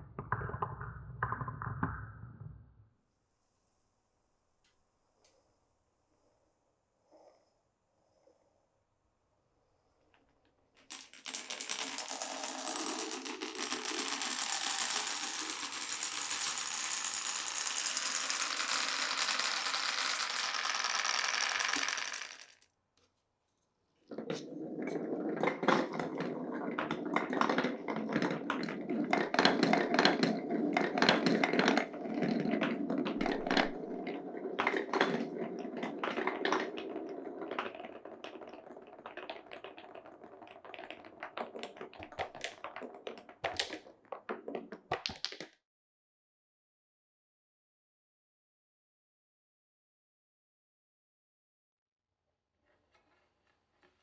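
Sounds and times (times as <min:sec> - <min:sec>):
marbles clacking on wood: 0:00.1 - 0:02.4, 0:10.8 - 0:22.6, 0:24.2 - 0:45.5
marbles rolling on wooden track: 0:00.1 - 0:02.5, 0:10.8 - 0:22.6, 0:24.1 - 0:45.5.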